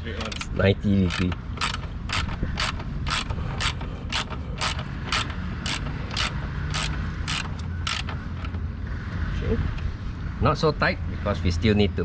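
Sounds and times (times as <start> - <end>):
socket ratchet clicking: 0.4 - 8.2.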